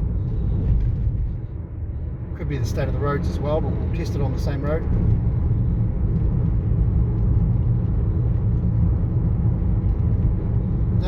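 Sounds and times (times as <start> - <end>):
tyre rumble inside car: 0.0 - 1.8, 4.0 - 11.0.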